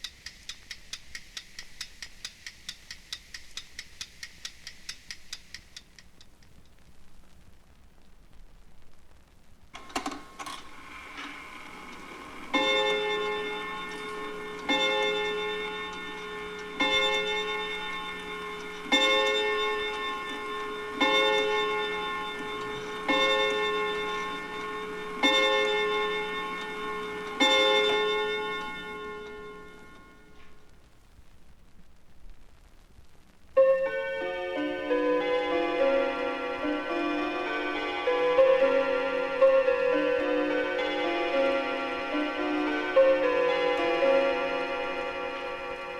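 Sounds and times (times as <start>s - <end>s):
mantel clock striking gong: 9.8s - 30.4s.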